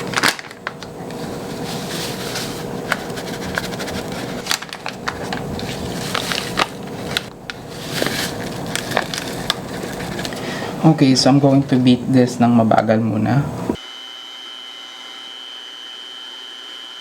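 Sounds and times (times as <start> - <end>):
packets crinkling: 0.0 - 10.6
fan-like hum: 0.0 - 17.0.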